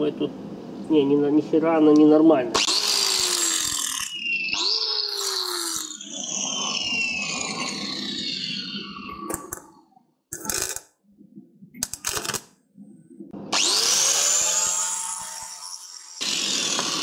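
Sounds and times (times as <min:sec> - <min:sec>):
angle grinder grinding metal: 0:02.6 - 0:08.8, 0:13.5 - 0:17.0.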